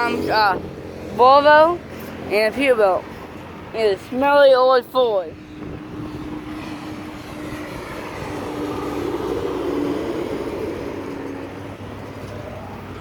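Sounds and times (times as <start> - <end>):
truck driving past: 5.3 - 13.0.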